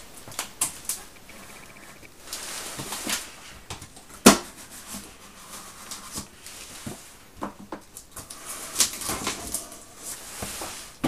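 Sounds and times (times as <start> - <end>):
cardboard rustling and scraping: 0.0 - 11.0.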